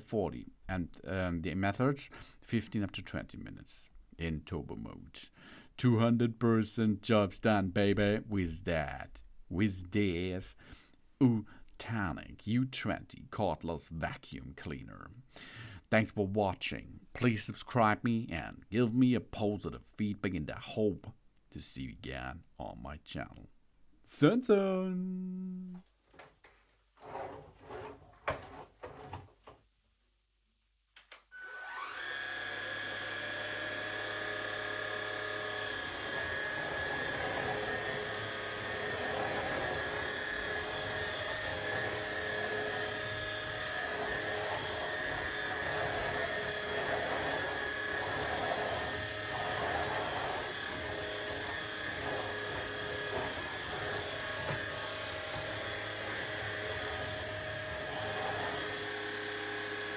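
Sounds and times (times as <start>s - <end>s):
stick vacuum motor whining: 31.3s - 59.9s.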